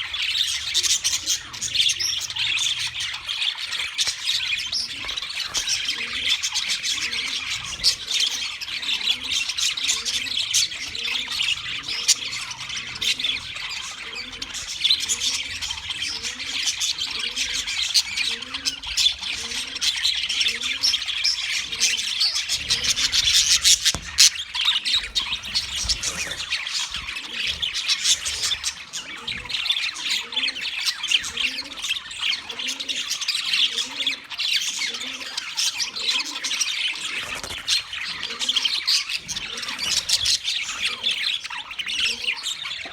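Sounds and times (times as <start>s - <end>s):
budgerigars chirping and chattering: 0.0s - 42.9s.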